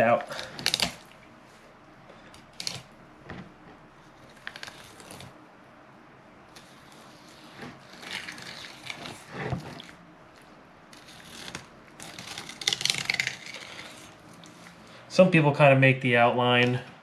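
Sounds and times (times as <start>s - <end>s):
knife scraping along fish bones: 6.6s - 10.0s, 10.9s - 14.8s.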